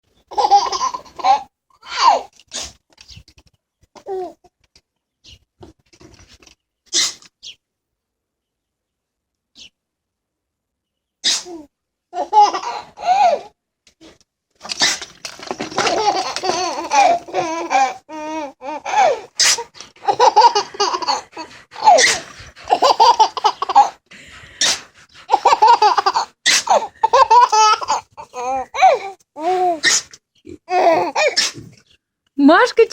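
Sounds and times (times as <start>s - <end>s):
child laughing: 0.3s - 2.3s, 11.5s - 13.5s, 15.7s - 19.3s, 20.0s - 24.0s, 25.3s - 29.8s, 30.7s - 31.4s
piglet sneezing: 2.5s - 2.8s, 11.2s - 11.7s, 19.4s - 19.7s, 21.8s - 22.4s, 24.6s - 24.9s, 29.8s - 30.1s, 31.0s - 31.7s.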